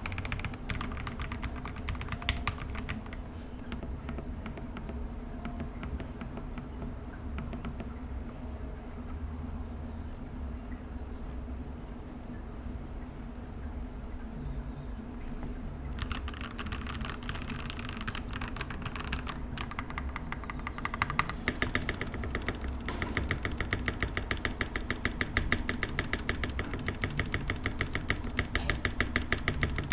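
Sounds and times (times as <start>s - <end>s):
typing on mechanical keyboard: 0.0s - 8.0s, 15.4s - 29.9s.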